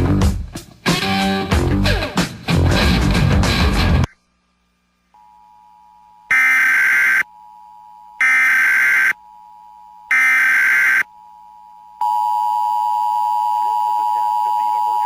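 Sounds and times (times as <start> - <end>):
faint steady tone: 5.0 - 15.0
digital data bursts: 6.3 - 7.2, 8.2 - 9.2, 10.1 - 11.0.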